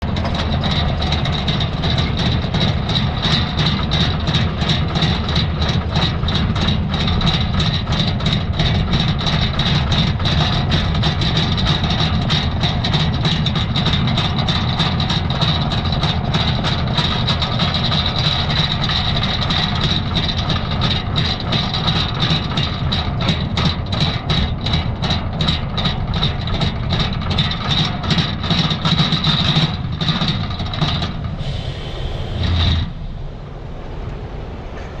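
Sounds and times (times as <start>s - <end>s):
dense crackling: 0.0s - 35.0s
trailer tyres rumbling: 0.0s - 35.0s
steady high whine: 30.8s - 35.0s.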